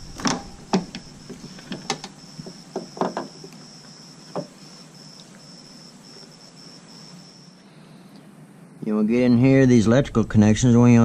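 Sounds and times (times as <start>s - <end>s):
insect trill: 0.0s - 8.8s.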